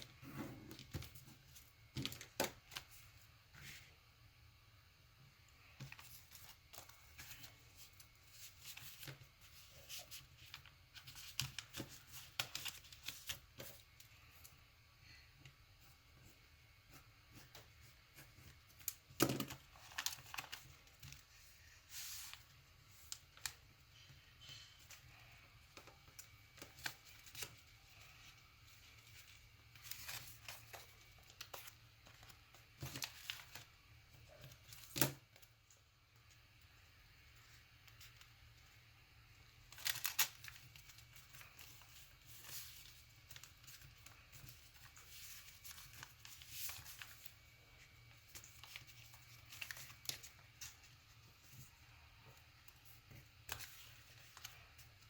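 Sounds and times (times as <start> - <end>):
paper being folded and creased: 5.6 - 14.5, 16.2 - 35.5, 39.7 - 55.0.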